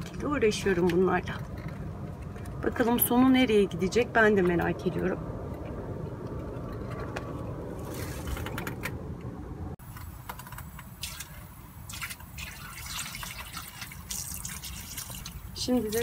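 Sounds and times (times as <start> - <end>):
water pouring and dripping: 9.8 - 16.0
small splashes: 11.0 - 16.0.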